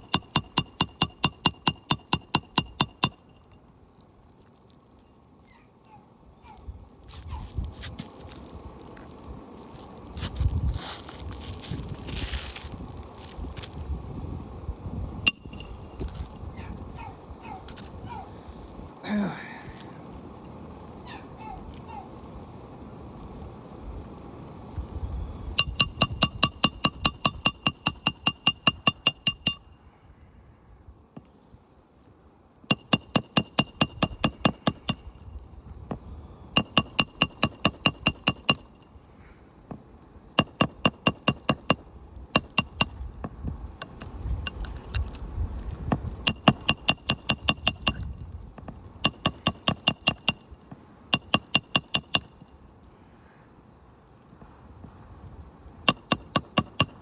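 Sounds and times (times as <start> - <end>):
hammer striking steel: 0.0 - 3.5, 15.3 - 15.7, 25.6 - 29.8, 32.7 - 35.0, 46.3 - 48.0, 49.0 - 50.5, 51.2 - 52.4, 55.9 - 57.0.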